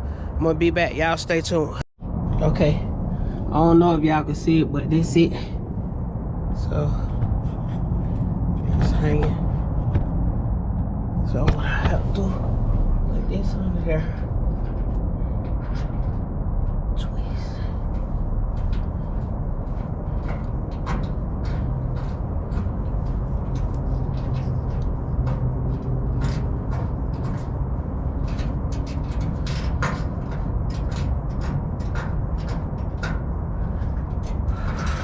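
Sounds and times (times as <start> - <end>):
steady low rumble: 0.0 - 35.0
metal hardware clicking and knocking: 17.9 - 35.0.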